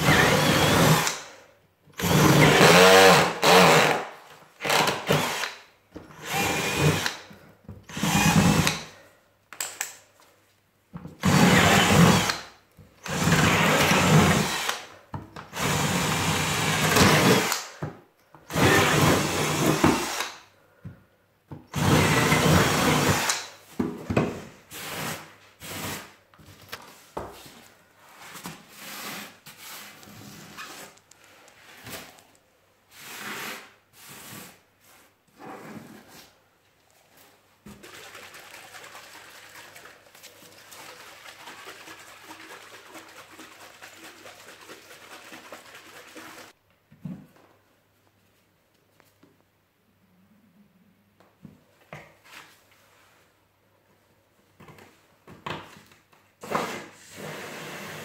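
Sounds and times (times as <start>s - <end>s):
power drill bursts: 0.0s - 1.3s, 2.0s - 4.0s, 4.6s - 5.6s, 6.2s - 7.2s, 7.9s - 8.9s, 11.2s - 12.4s, 13.0s - 14.8s, 15.6s - 17.6s, 18.5s - 20.4s, 21.8s - 23.4s.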